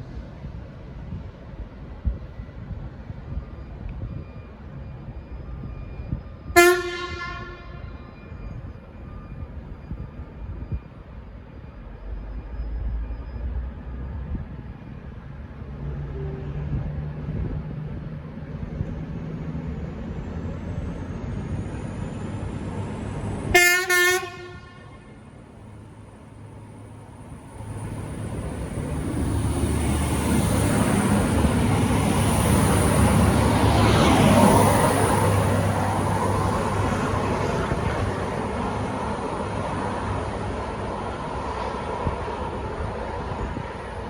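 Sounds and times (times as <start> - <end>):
train rumble: 0.0 - 44.0
train horn blasts: 6.6 - 8.0, 23.5 - 25.2.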